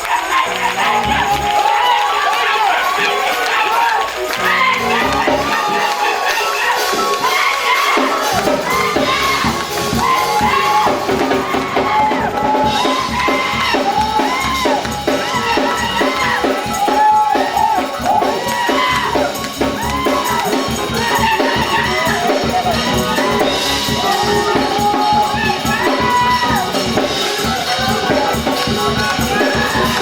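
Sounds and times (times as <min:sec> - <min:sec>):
congregation shouting and cheering: 0:00.0 - 0:30.0
gospel praise music: 0:00.0 - 0:30.0
tambourine: 0:04.6 - 0:30.0.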